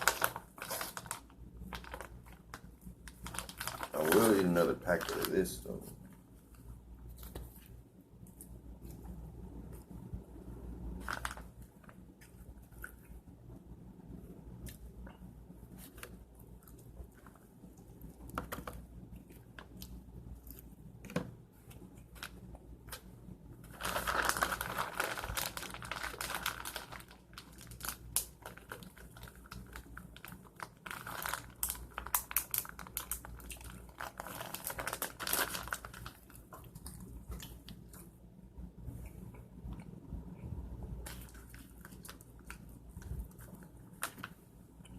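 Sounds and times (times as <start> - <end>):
plastic packet crinkling: 0.0 - 6.0, 11.0 - 12.1, 22.0 - 37.8, 41.0 - 44.4.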